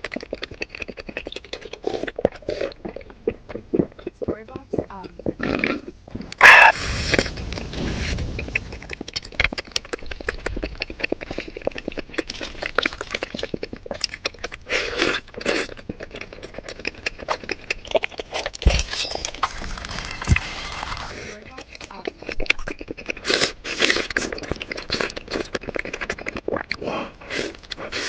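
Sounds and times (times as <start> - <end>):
bites and slurps: 0.0 - 28.0
person chewing meat: 0.0 - 28.0
quick mouth clicks: 5.5 - 7.6.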